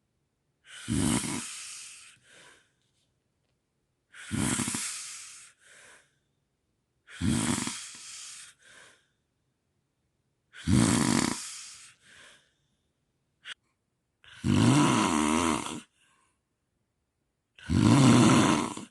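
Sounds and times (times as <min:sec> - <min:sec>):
person snoring: 0:00.6 - 0:02.7, 0:04.1 - 0:06.0, 0:07.1 - 0:09.0, 0:10.6 - 0:12.4, 0:14.3 - 0:16.0, 0:17.6 - 0:18.9
soft breath: 0:00.7 - 0:03.1, 0:04.1 - 0:06.4, 0:07.7 - 0:09.2, 0:11.3 - 0:13.8, 0:15.9 - 0:16.4.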